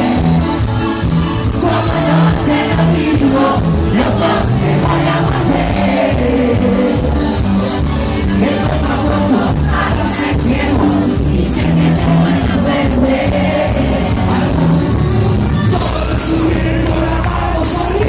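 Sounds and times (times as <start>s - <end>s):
crowd noise: 0.0s - 18.0s
live band dance music: 0.0s - 18.0s.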